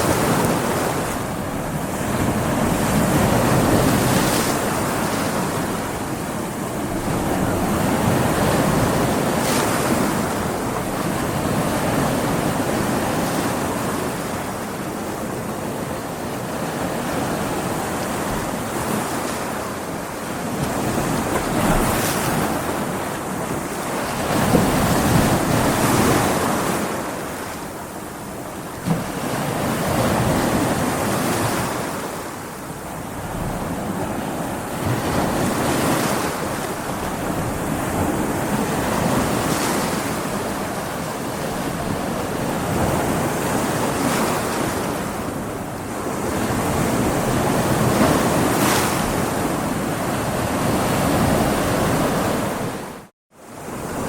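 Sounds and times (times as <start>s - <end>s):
waves breaking against rocks: 20.3s - 27.4s.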